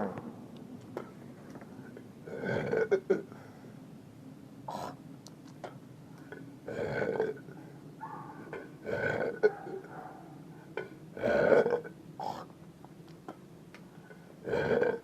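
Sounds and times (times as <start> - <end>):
man belching: 2.2 - 3.3, 6.7 - 7.4, 8.5 - 9.5, 10.8 - 12.5, 14.4 - 15.0.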